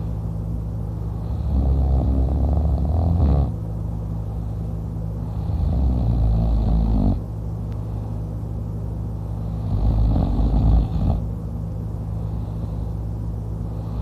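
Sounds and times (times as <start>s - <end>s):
man snoring: 1.2s - 3.6s, 5.3s - 7.2s, 9.5s - 11.2s.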